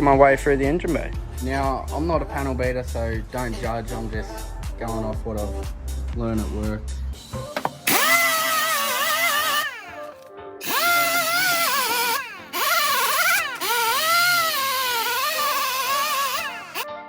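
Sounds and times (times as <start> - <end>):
power tool whining: 7.5 - 16.9.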